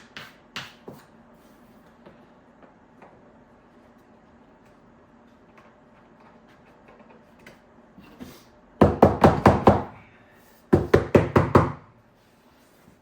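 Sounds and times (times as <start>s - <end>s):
hammer knocking flooring: 8.8s - 9.9s, 10.7s - 11.8s.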